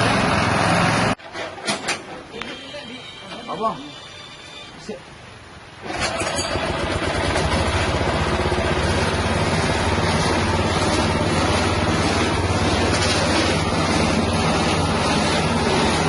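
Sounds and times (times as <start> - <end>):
grinding machine engine starting: 5.8 - 16.0.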